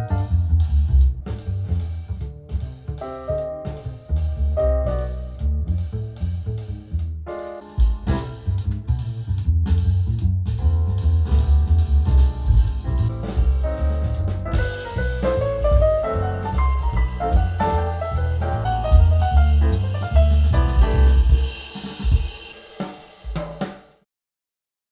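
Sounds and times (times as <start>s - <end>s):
bass line: 0.0s - 21.6s
instrumental jazz through loudspeaker: 10.8s - 21.4s.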